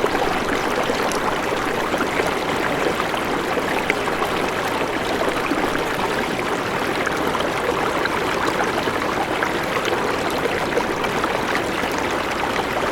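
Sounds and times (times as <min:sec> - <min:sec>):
river water rushing over rocks: 0:00.0 - 0:07.5.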